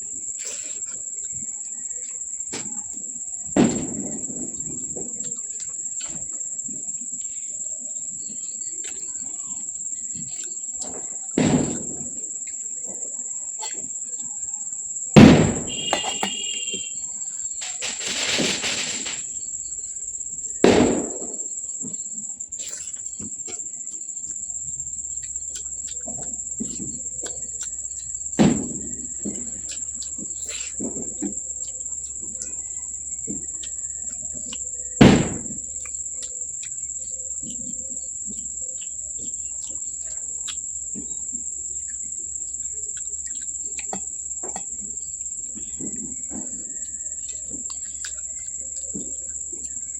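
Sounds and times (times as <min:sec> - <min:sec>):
close chewing sounds: 0:00.0 - 0:15.0, 0:21.4 - 0:49.9
crickets trilling: 0:00.0 - 0:49.9
loud crunches: 0:15.3 - 0:19.5, 0:20.9 - 0:37.6.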